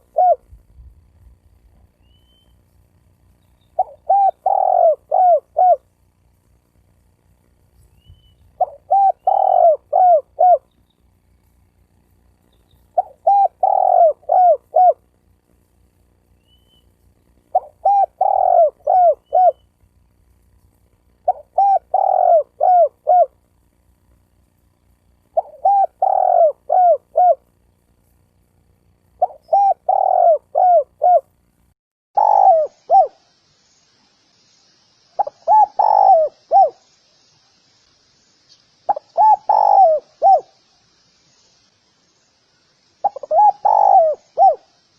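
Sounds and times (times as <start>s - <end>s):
dove cooing: 0.0s - 0.6s, 3.8s - 5.9s, 8.1s - 10.7s, 13.0s - 15.1s, 17.5s - 19.7s, 21.2s - 23.4s, 25.4s - 27.4s, 29.2s - 31.3s, 32.2s - 33.2s, 35.2s - 36.8s, 38.9s - 40.5s, 43.0s - 44.7s
faint high hiss: 0.0s - 44.9s.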